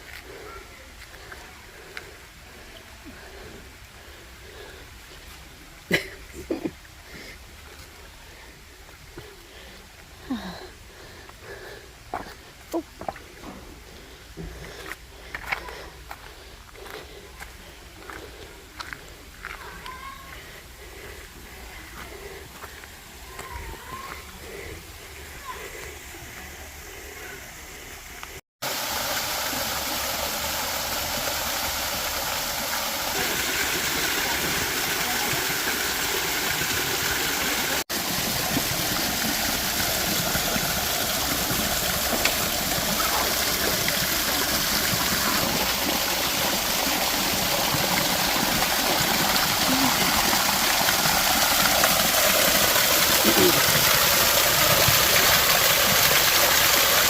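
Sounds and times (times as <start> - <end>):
waterfall rushing: 28.6 - 57.0.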